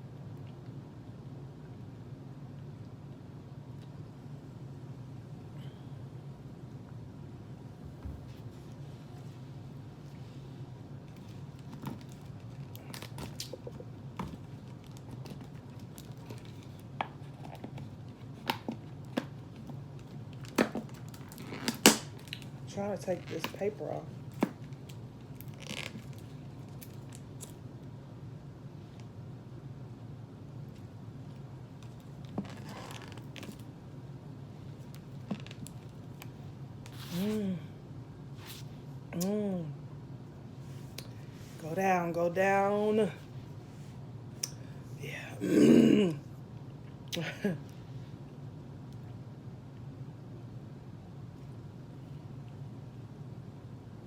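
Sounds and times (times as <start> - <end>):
low steady hum: 0.0 - 54.0.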